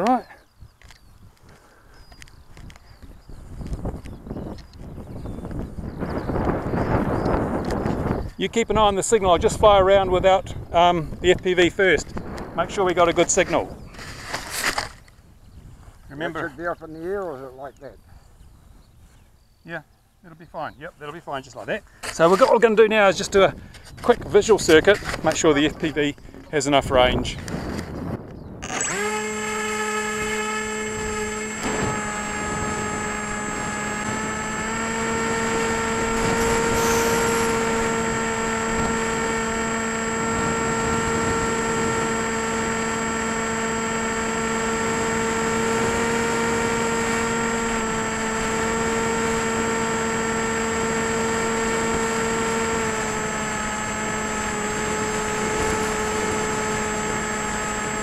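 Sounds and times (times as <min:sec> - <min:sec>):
electric motor and propeller whine: 0:00.0 - 0:17.8, 0:20.4 - 0:58.0.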